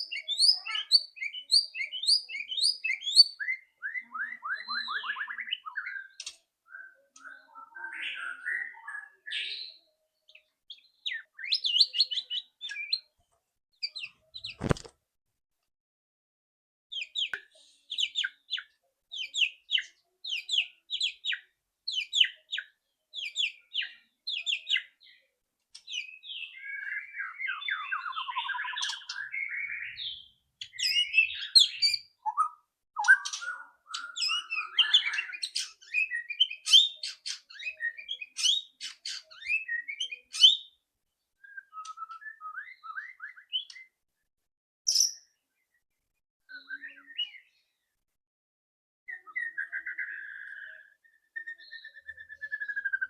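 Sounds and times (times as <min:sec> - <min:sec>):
songbird singing rapid notes: 0:00.0 - 0:13.1, 0:16.9 - 0:25.2, 0:25.8 - 0:40.8, 0:49.1 - 0:53.0.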